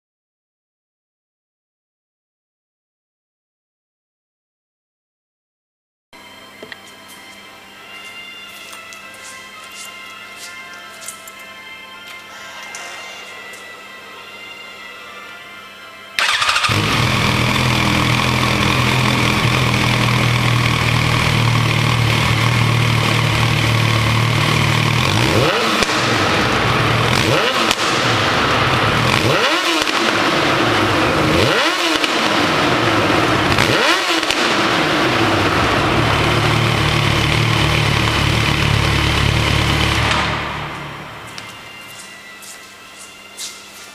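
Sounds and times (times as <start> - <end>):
motorcycle engine idling and revving: 16.2 - 41.7.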